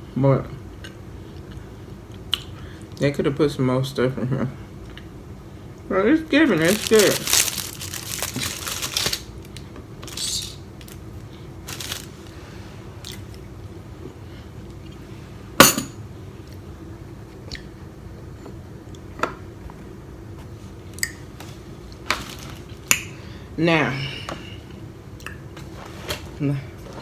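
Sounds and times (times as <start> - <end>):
soft rustling: 6.5 - 9.3, 11.6 - 12.7.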